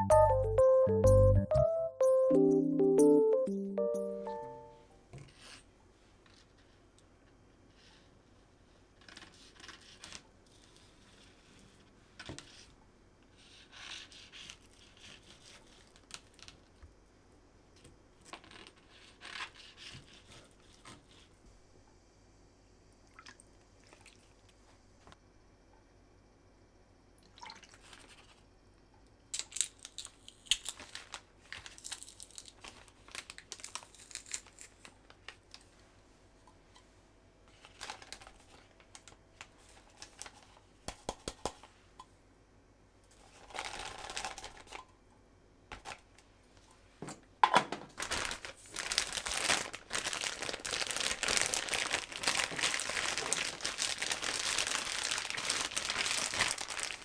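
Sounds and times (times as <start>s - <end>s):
packaging crinkling: 29.4s - 35.7s, 37.5s - 40.6s, 43.3s - 44.8s, 47.9s - 57.0s.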